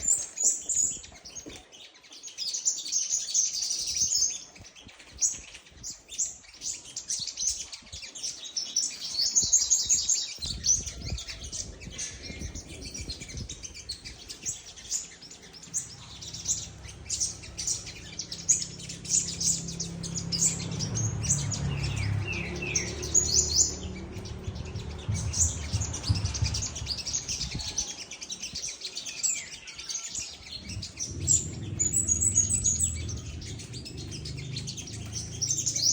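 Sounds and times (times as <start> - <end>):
small bird chirping and trilling: 0.0 - 35.9
low steady rumble: 15.8 - 27.8, 30.4 - 35.8.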